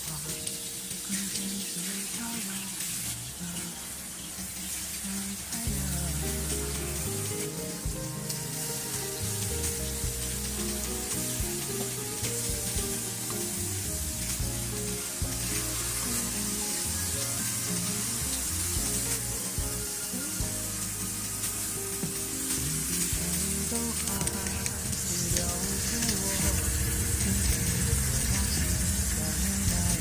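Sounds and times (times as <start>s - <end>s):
food sizzling in a pan: 0.0s - 30.0s
instrumental background music: 0.0s - 30.0s.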